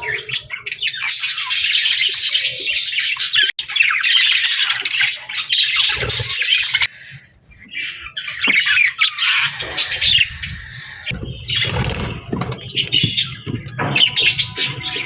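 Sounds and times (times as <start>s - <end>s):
small parrots chattering and squawking: 0.0s - 15.0s.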